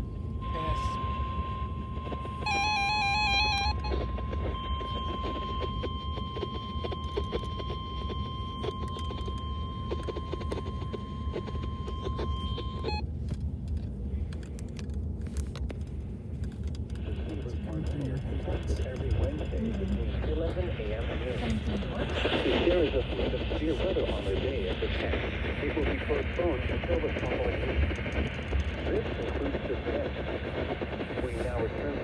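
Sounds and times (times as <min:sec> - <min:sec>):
radio static hiss: 0:00.0 - 0:13.0, 0:16.9 - 0:32.0
warbling data burst: 0:00.0 - 0:13.0, 0:18.4 - 0:32.0
steady high alarm tone: 0:00.0 - 0:13.1
low rumble: 0:00.0 - 0:32.0.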